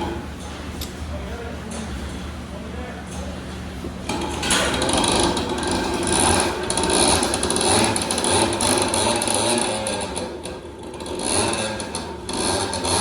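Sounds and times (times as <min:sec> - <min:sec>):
tool clattering on metal: 0:04.1 - 0:07.9.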